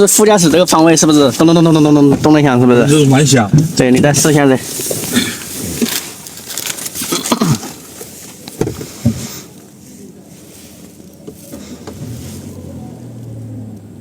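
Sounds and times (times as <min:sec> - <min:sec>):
voices: 0:00.0 - 0:14.0
car engine idling inside cabin: 0:07.6 - 0:14.0.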